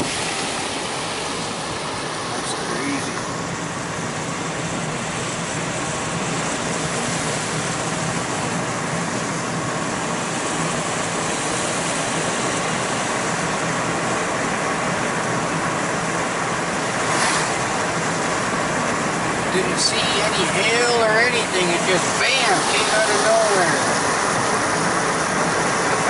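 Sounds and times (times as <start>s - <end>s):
car road and tyre noise: 0.0s - 26.0s
brief rush: 17.0s - 17.8s.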